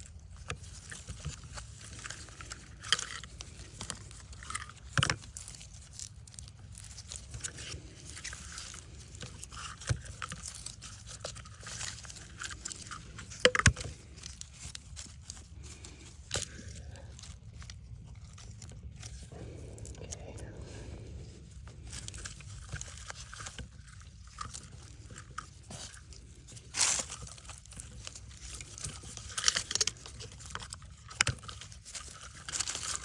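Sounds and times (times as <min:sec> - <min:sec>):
handling small parts and tools: 0:00.0 - 0:33.0
steady low hum: 0:00.0 - 0:33.0.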